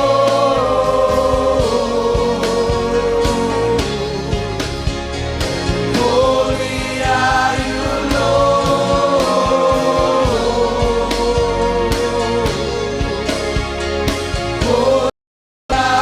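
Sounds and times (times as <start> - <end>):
voices singing long notes: 0.0 - 5.1, 5.7 - 13.8, 14.4 - 15.1, 15.7 - 16.0
steady drum beat: 0.0 - 15.1, 15.7 - 16.0.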